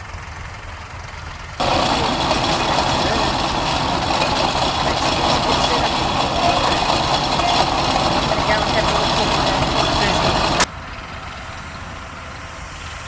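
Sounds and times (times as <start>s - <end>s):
quieter engine sound: 1.1s - 13.0s
steady steam hiss: 1.6s - 10.7s
steam engine running: 1.6s - 10.7s.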